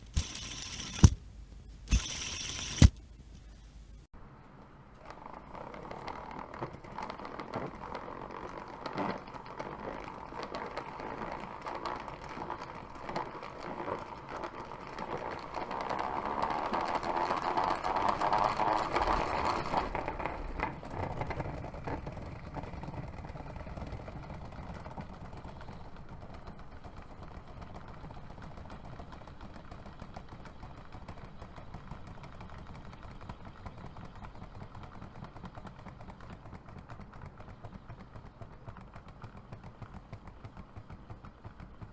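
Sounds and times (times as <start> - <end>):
sharp clicks: 0.0 - 3.6
spinner whirring: 0.0 - 4.1, 5.0 - 28.8.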